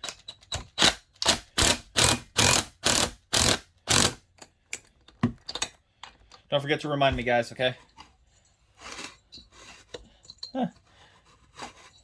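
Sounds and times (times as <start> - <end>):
ratchet wrench ratcheting: 0.0 - 4.2.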